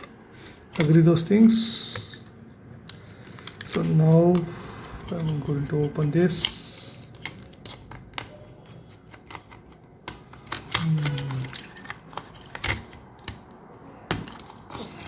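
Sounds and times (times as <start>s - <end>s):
laptop parts clicking and snapping: 2.8s - 4.5s, 6.3s - 14.8s
man humming: 10.8s - 11.6s.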